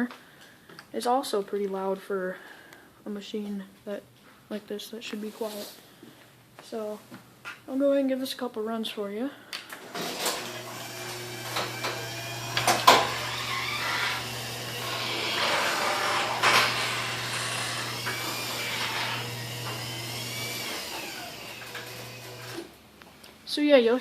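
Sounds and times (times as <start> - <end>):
garage door opener motor humming: 9.8 - 22.8.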